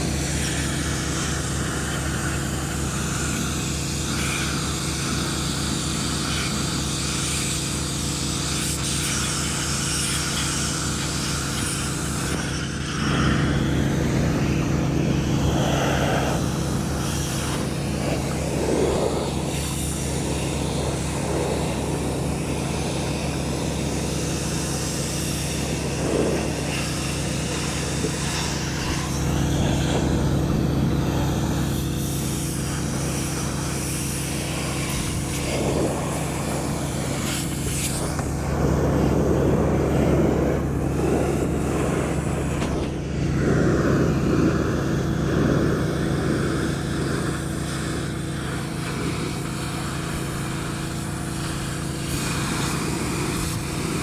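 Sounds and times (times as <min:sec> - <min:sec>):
pressure washer engine running: 0:00.0 - 0:54.0
water spray hissing on metal roof: 0:00.0 - 0:54.0.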